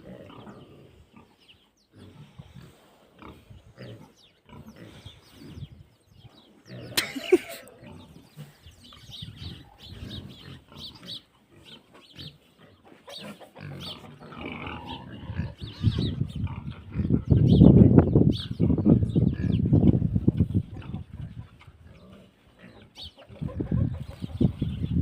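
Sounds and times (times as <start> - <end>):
pigs grunting: 0.0 - 5.7, 6.4 - 8.7, 9.3 - 17.5, 20.7 - 23.7.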